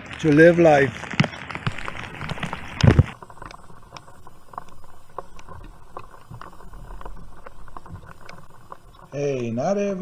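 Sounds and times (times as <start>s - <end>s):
raindrops ticking on surfaces: 1.7s - 9.5s.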